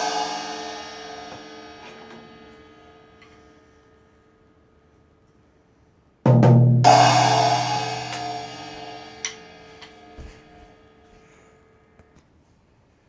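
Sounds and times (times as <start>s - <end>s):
cymbal crash ringing: 0.0s - 3.2s, 6.8s - 10.7s
quick drum hits: 6.3s - 10.4s.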